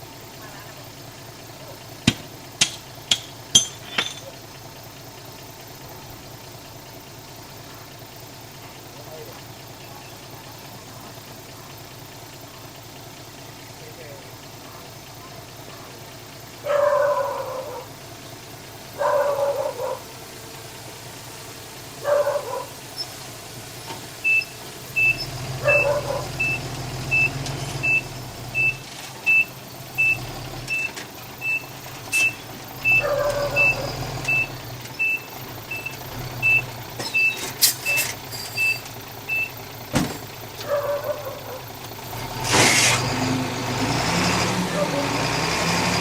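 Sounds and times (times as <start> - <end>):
low machine engine running: 0.0 - 46.0
dog barking: 14.6 - 17.9, 19.0 - 20.1, 22.0 - 22.8, 25.6 - 26.6, 32.9 - 33.9, 40.6 - 41.7, 44.7 - 45.0
reversing alarm beeping: 24.2 - 39.6.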